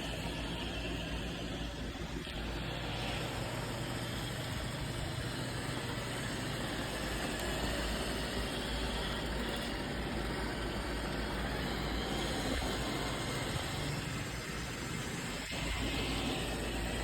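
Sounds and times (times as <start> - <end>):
robot vacuum whirring: 0.0 - 17.0.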